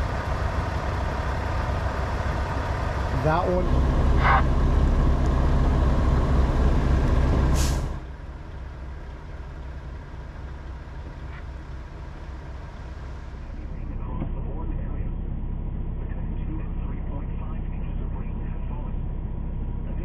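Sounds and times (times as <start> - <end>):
diesel engines idling: 0.0 - 20.0
air brake hiss: 7.5 - 8.0.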